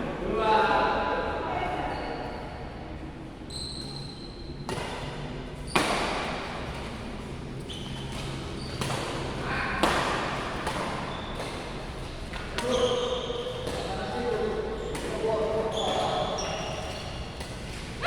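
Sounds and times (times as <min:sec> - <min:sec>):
racket hitting shuttlecock: 0:04.6 - 0:06.9, 0:07.8 - 0:14.3, 0:15.9 - 0:18.0.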